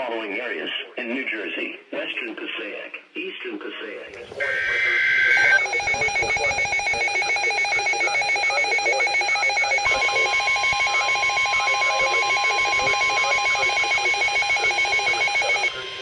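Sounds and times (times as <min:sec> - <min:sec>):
two-tone alert signal buzzing: 0:04.2 - 0:16.0.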